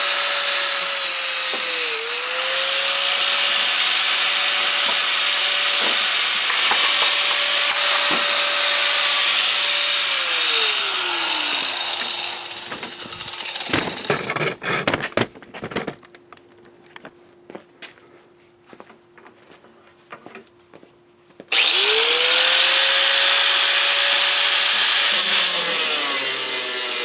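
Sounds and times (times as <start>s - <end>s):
angle grinder cutting steel: 0.0s - 14.3s, 21.5s - 27.0s
clattering knocks: 5.8s - 8.7s.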